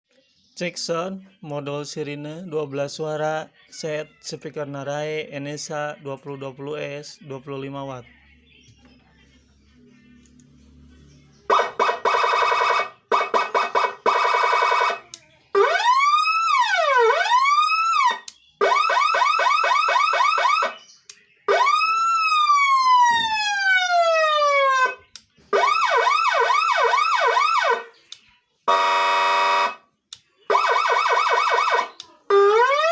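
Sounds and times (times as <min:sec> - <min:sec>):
electronic siren cycling tones: 0:11.5 - 0:15.0, 0:15.6 - 0:20.8, 0:21.5 - 0:25.0, 0:25.6 - 0:27.9, 0:28.7 - 0:29.8, 0:30.5 - 0:32.9.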